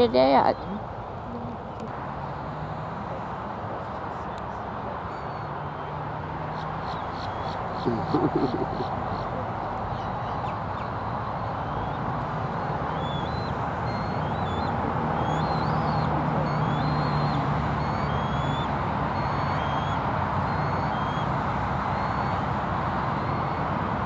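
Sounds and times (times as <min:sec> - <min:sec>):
distant traffic rumble: 0:00.0 - 0:24.0
small birds singing: 0:04.2 - 0:22.5
low hum: 0:07.9 - 0:09.5.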